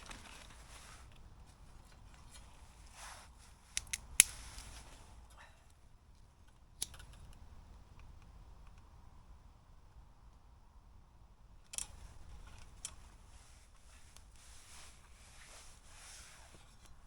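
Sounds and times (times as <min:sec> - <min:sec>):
cardboard and firewood rustling: 0:00.0 - 0:03.6
wood snapping clicks: 0:03.8 - 0:04.4.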